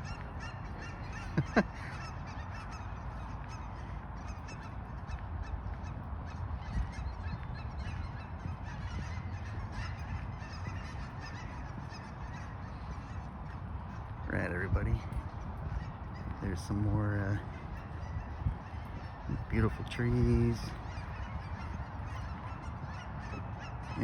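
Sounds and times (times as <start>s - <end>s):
waterfowl flock honking: 0.0s - 24.0s.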